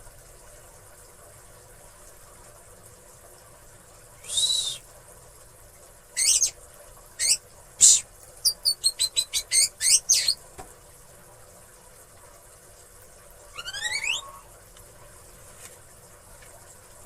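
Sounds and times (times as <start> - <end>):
bird singing: 6.2 - 6.5, 7.2 - 10.4, 13.5 - 14.4.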